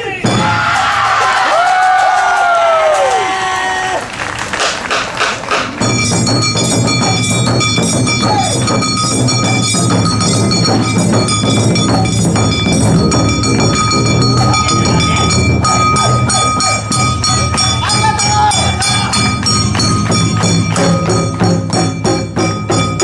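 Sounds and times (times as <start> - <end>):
drums: 0.0 - 3.4, 4.2 - 23.0
ringing metal bell: 5.8 - 23.0.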